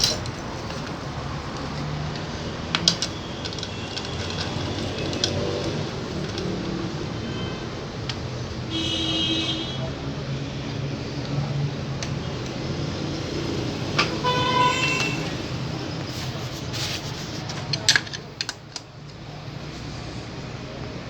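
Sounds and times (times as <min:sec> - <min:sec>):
steady low traffic hum: 0:00.0 - 0:21.0
vehicle horns honking: 0:07.0 - 0:07.8, 0:08.6 - 0:10.0, 0:14.0 - 0:15.7.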